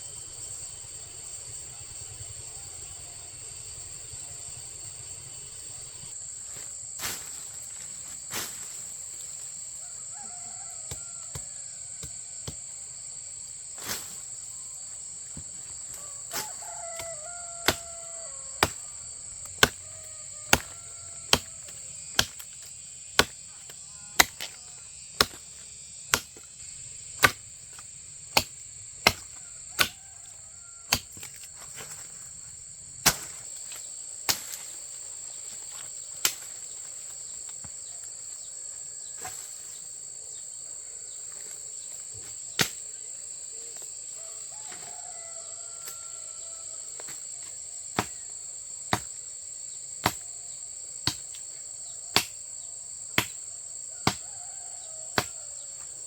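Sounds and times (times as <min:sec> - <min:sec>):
high-pitched insect chorus: 0:00.0 - 0:56.0
sharp knocks: 0:22.2 - 0:22.5.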